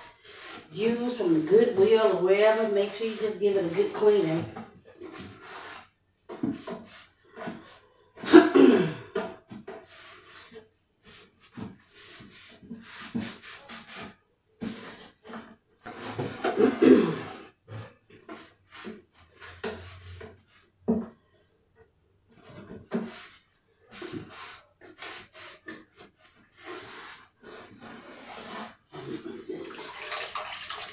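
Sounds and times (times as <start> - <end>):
cloth wiping wood: 0.2 - 4.4.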